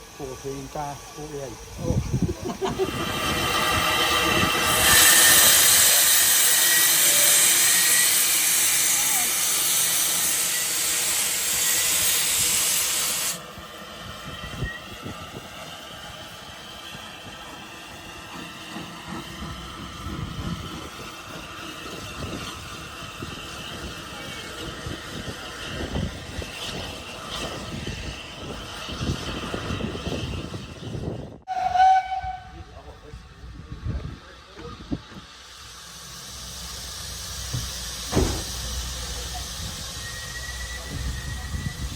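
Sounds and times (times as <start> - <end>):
steam locomotive hissing steam: 0.0 - 41.9
wind buffeting microphone: 1.6 - 5.0, 19.4 - 31.5, 41.0 - 41.9.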